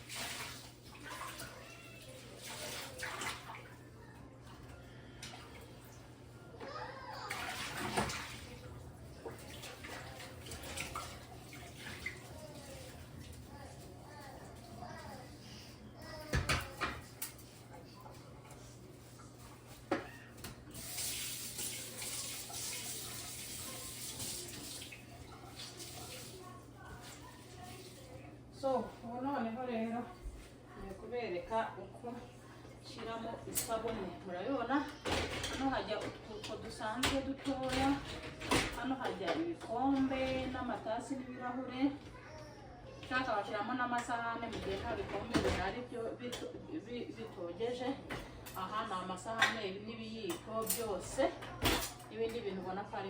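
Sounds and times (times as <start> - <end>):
tap water splashing over dishes: 0.0 - 3.8, 6.6 - 15.3, 16.0 - 28.4
tap water running into sink: 20.4 - 28.1.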